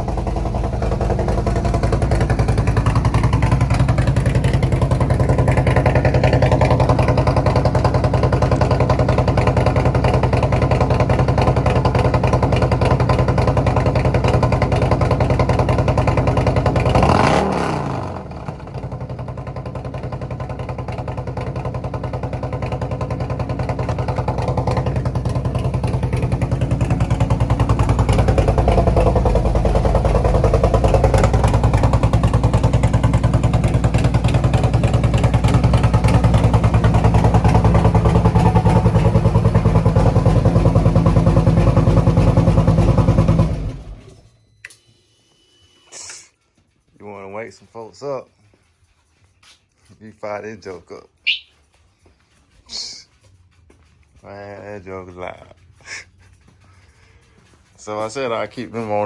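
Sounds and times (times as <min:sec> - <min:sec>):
motorcycle engine idling: 0:00.0 - 0:44.3.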